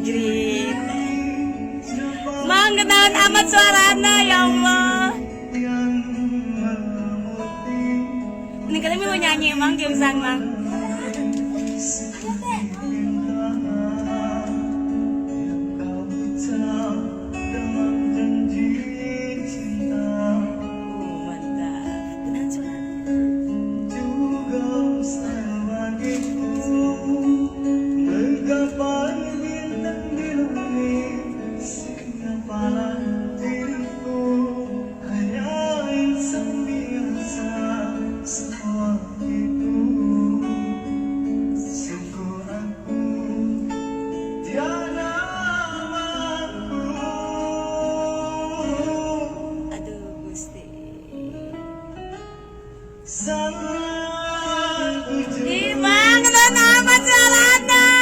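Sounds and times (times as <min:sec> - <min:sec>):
person singing: 0:00.0 - 0:23.2, 0:44.3 - 0:51.8, 0:53.1 - 0:58.0
strummed acoustic guitar: 0:00.0 - 0:58.0.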